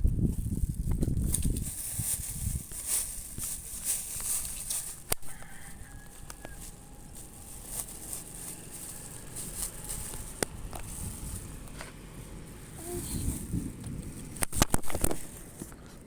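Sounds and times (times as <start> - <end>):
steady outdoor hiss: 1.7 - 16.0
rooster crowing: 5.0 - 9.3.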